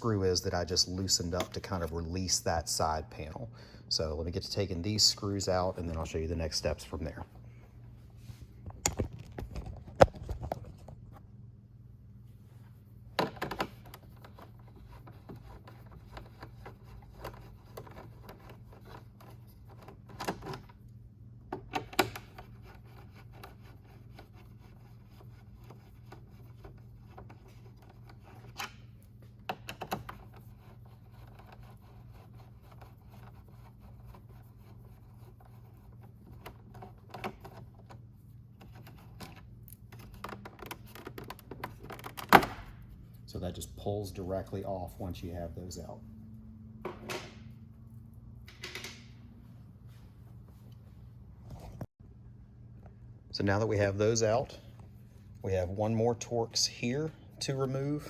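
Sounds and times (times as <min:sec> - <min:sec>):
low hum: 0:42.7 - 0:53.4.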